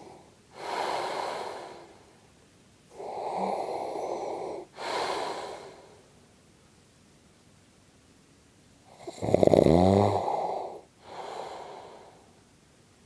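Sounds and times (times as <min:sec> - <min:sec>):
person snoring: 0:03.0 - 0:05.8, 0:09.0 - 0:12.1.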